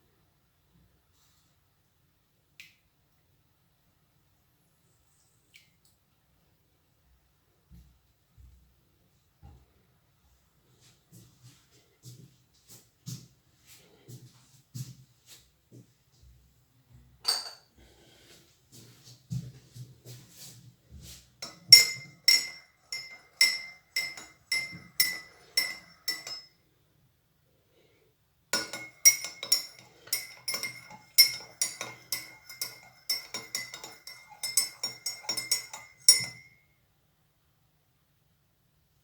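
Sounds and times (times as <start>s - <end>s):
teaspoon clinking in a cup: 17.3s - 17.6s, 21.4s - 26.6s, 28.6s - 36.6s.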